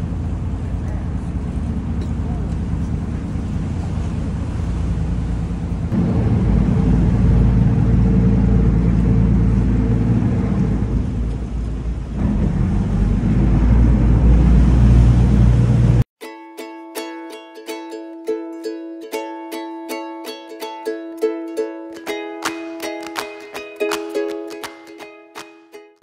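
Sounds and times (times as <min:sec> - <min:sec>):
boat engine running: 0:00.0 - 0:16.0
ukulele music: 0:16.2 - 0:26.0.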